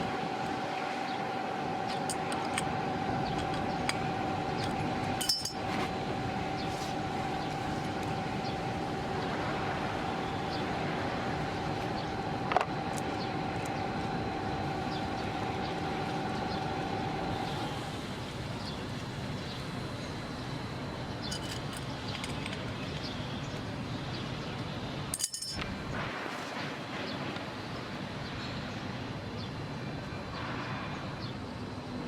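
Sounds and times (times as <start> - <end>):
machine whine: 0.0 - 32.0
pile driver engine and hydraulics: 0.0 - 32.0
light metallic clinks: 5.2 - 5.6, 25.1 - 25.6.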